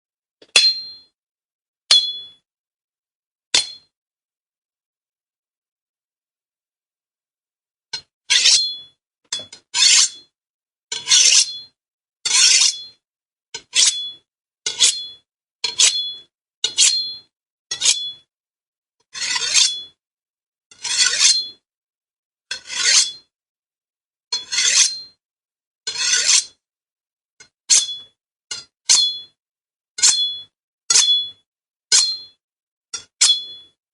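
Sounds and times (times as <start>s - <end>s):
machete blade scraping: 8.0s - 10.3s, 10.9s - 13.0s, 13.6s - 18.3s, 19.1s - 20.0s, 20.8s - 21.6s, 22.5s - 23.3s, 24.4s - 25.2s, 25.9s - 26.6s, 27.4s - 29.4s, 30.0s - 32.4s.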